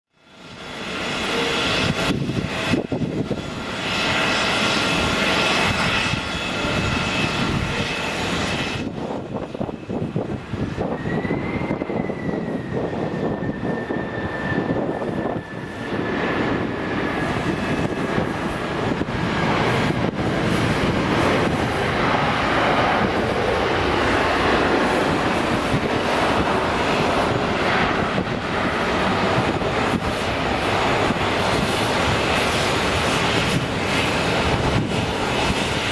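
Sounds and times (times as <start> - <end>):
jet engines roaring: 0.2 - 35.9.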